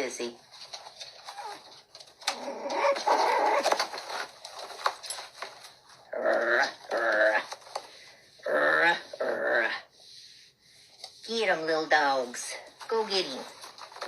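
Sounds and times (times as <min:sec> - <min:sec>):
puppies growling and whining: 0:01.2 - 0:04.3.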